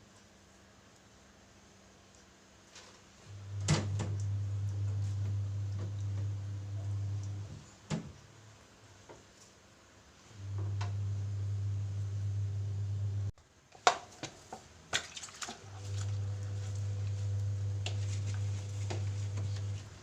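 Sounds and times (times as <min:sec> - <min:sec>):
electrical motor hum: 0:03.3 - 0:08.2, 0:10.3 - 0:13.4, 0:15.6 - 0:20.0.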